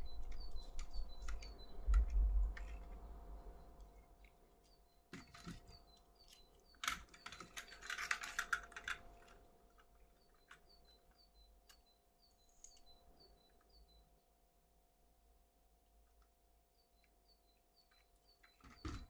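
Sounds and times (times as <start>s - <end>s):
faint high chirp: 0.0s - 8.1s, 10.0s - 14.4s.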